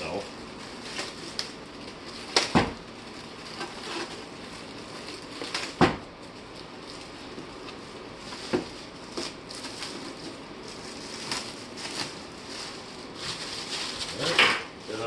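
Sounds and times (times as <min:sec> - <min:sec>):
styrofoam and cardboard rustling: 0:00.0 - 0:15.0.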